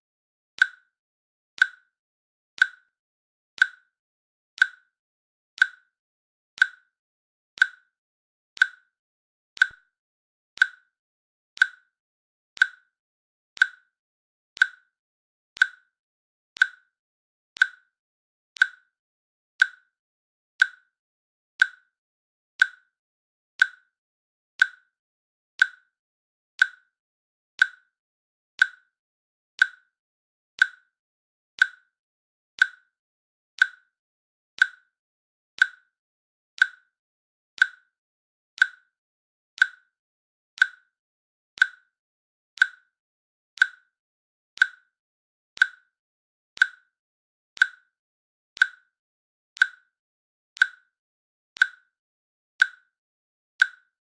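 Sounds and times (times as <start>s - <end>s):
timer ticking: 0.6s - 0.9s, 1.6s - 1.9s, 2.6s - 2.9s, 3.6s - 3.9s, 4.6s - 4.9s, 5.6s - 5.9s, 6.6s - 6.9s, 7.6s - 7.9s, 8.6s - 9.0s, 9.6s - 9.9s, 10.6s - 11.0s, 11.6s - 12.0s, 12.6s - 13.0s, 13.6s - 13.9s, 14.6s - 15.0s, 15.6s - 16.0s, 16.6s - 17.0s, 17.6s - 18.0s, 18.6s - 18.9s, 19.6s - 19.9s, 20.6s - 20.9s, 21.6s - 21.9s, 22.6s - 22.9s, 23.6s - 24.0s, 24.6s - 24.9s, 25.6s - 25.9s, 26.6s - 26.9s, 27.6s - 27.9s, 28.6s - 29.0s, 29.6s - 30.0s, 30.6s - 30.9s, 31.6s - 32.0s, 32.6s - 33.0s, 33.6s - 34.0s, 34.6s - 35.0s, 35.6s - 36.0s, 36.6s - 36.9s, 37.6s - 38.0s, 38.6s - 38.9s, 39.6s - 40.0s, 40.6s - 41.0s, 41.6s - 42.0s, 42.6s - 42.9s, 43.6s - 43.9s, 44.6s - 45.0s, 45.6s - 46.0s, 46.6s - 46.9s, 47.6s - 48.0s, 48.6s - 48.9s, 49.6s - 49.9s, 50.6s - 50.9s, 51.6s - 51.9s, 52.6s - 52.9s, 53.6s - 53.9s.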